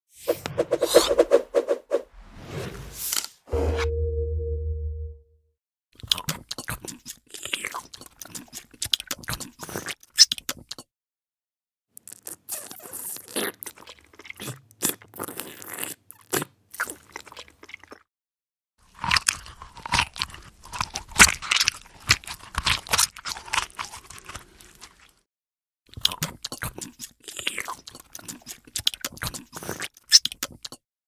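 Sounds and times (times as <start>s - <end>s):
man chewing crunchy food: 6.0s - 10.8s, 12.0s - 18.0s, 18.9s - 25.2s, 25.9s - 30.8s.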